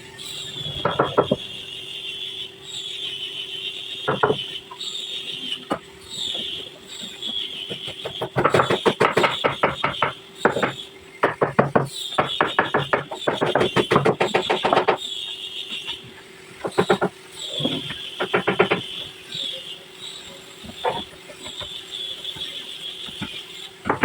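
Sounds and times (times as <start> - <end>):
rapid knocking: 18.2 - 18.9.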